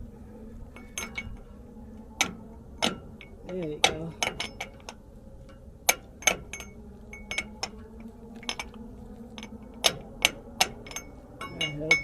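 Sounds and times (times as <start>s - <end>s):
faint steady hum: 0.0s - 12.0s
metal parts clinking: 0.8s - 1.4s, 5.9s - 7.8s, 8.4s - 8.8s, 9.4s - 12.0s.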